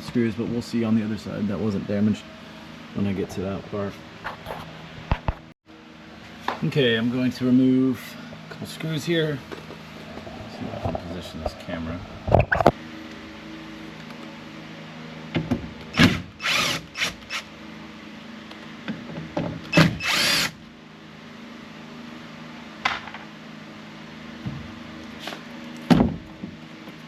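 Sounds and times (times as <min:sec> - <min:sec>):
power drill-driver running: 0:16.0 - 0:17.5, 0:19.7 - 0:20.6.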